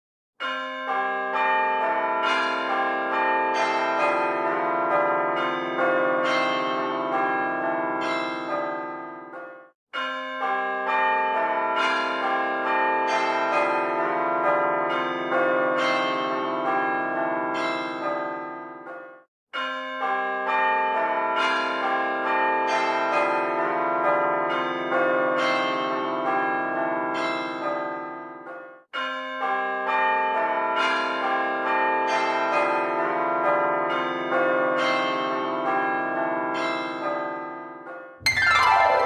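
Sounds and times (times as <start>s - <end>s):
ringing bell melody: 38.2s - 39.0s.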